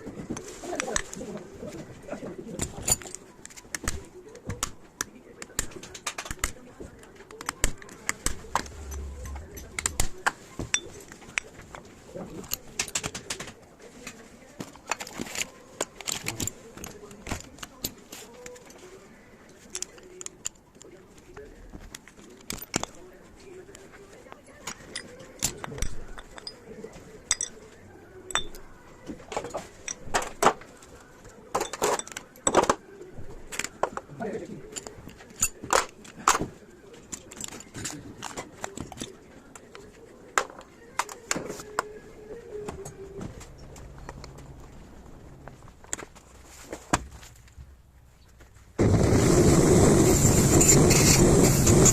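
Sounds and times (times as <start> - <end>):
metal tools clicking and clinking: 2.6 - 3.7, 24.6 - 26.7, 27.3 - 28.7, 29.3 - 30.5, 31.6 - 32.8, 34.6 - 36.4, 37.1 - 39.8
low hum: 8.4 - 10.3.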